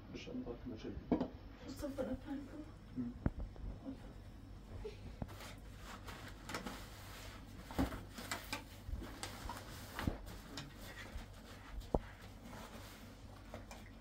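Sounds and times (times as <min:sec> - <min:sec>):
faint low hum: 0:00.0 - 0:14.0.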